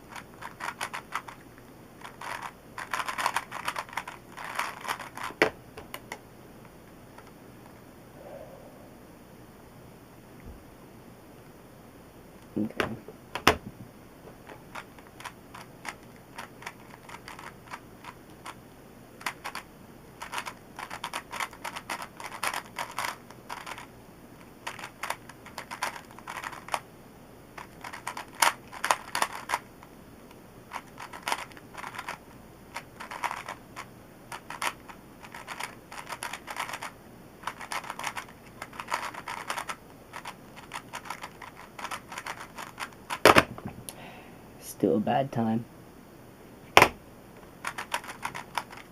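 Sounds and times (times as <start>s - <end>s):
puzzle cube clicking: 0.1s - 1.4s, 2.0s - 6.1s, 20.2s - 23.9s, 27.6s - 29.7s, 30.7s - 43.5s, 47.6s - 48.9s.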